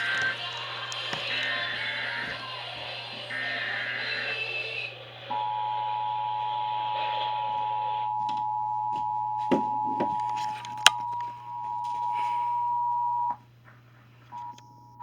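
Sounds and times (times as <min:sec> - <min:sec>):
radio hiss: 0:00.0 - 0:08.2.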